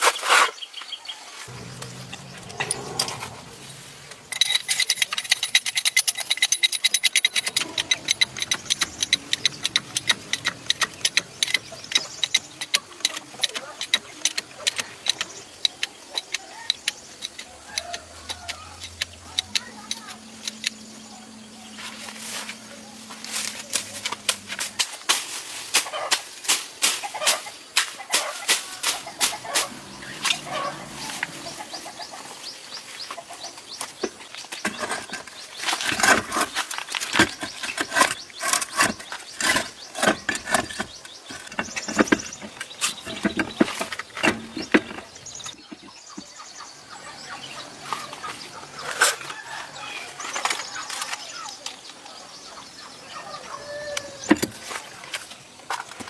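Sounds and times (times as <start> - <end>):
sharp irregular clicks and taps: 4.3 - 20.8.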